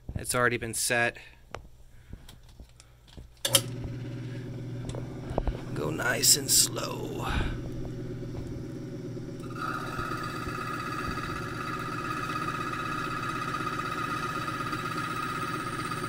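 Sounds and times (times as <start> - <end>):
milling cutter whining on metal: 3.6 - 16.0
motor running: 3.6 - 16.0.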